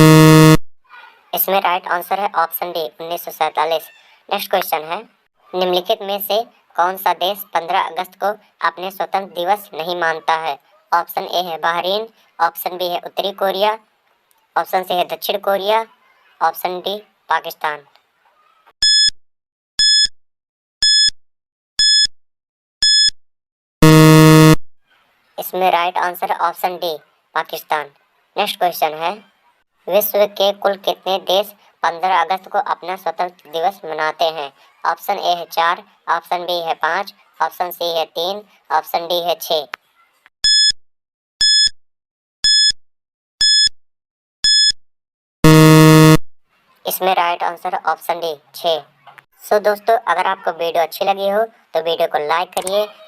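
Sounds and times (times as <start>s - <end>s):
high-pitched electronic beeps: 0.0s - 0.6s
low buzzer tone: 0.0s - 0.6s, 23.8s - 24.6s, 44.5s - 44.7s, 45.4s - 46.2s
short high beeps: 0.0s - 0.6s, 18.8s - 19.1s, 19.8s - 20.1s, 20.8s - 21.1s, 21.8s - 22.1s, 22.8s - 23.1s, 23.8s - 24.6s, 40.4s - 40.8s, 41.4s - 41.7s, 42.4s - 42.8s, 43.4s - 43.7s, 44.4s - 44.8s, 45.4s - 46.2s.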